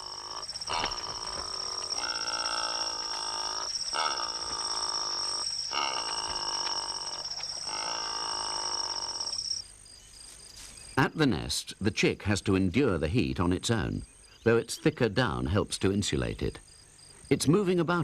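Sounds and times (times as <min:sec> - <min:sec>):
rasping croaking calls: 0:00.0 - 0:09.6
high-pitched insect whine: 0:00.0 - 0:10.7.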